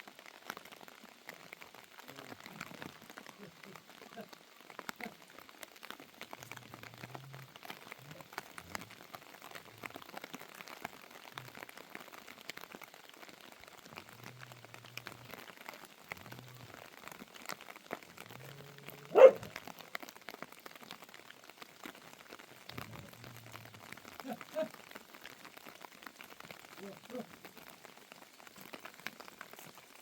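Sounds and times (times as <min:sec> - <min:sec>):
faint ticks and drips: 0:00.0 - 0:30.0
dog barking: 0:19.1 - 0:19.5.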